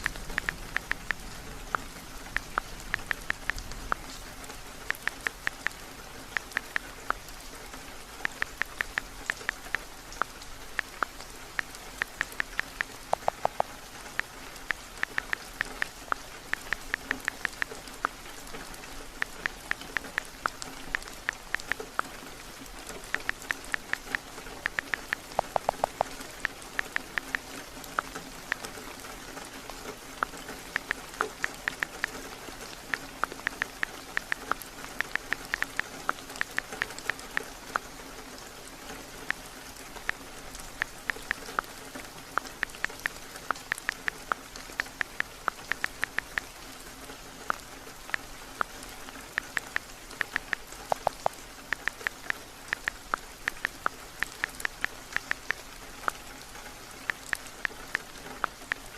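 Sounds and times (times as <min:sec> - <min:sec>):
phone keyboard typing clicks: 0:00.0 - 0:04.0, 0:04.9 - 0:07.2, 0:08.2 - 0:13.7, 0:14.6 - 0:18.2, 0:23.1 - 0:27.4, 0:32.8 - 0:37.5, 0:42.4 - 0:46.5, 0:49.4 - 0:56.2
steady rain: 0:00.0 - 0:58.9.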